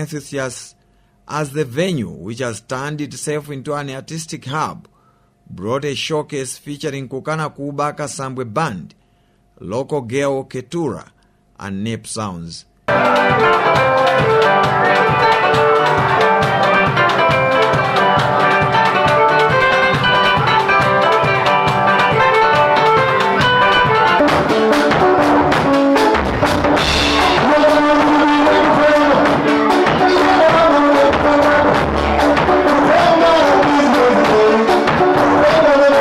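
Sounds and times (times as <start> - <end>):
melodic pitched instruments: 12.9 - 36.0
steady drumbeat: 12.9 - 36.0.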